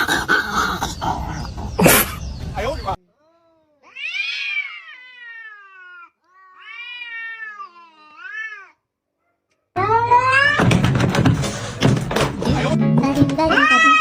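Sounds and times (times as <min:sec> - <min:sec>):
cat meowing: 0:03.2 - 0:08.8, 0:09.8 - 0:10.7, 0:13.5 - 0:14.0.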